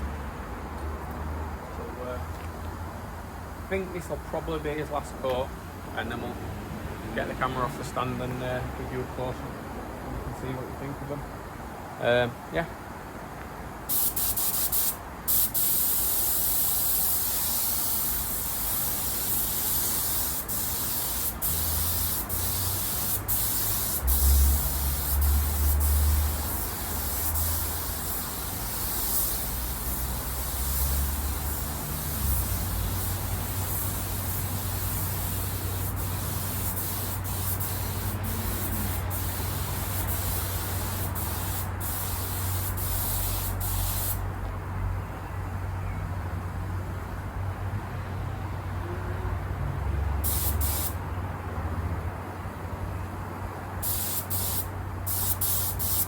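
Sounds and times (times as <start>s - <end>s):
spray gun hissing: 13.9s - 44.2s, 50.2s - 51.0s, 53.8s - 56.0s.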